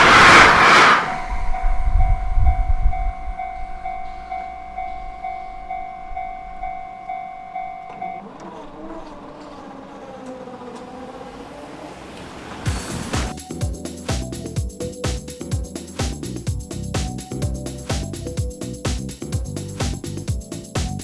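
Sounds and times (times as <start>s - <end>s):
train rumble: 0.0s - 21.0s
level crossing bell clanging: 1.2s - 9.7s.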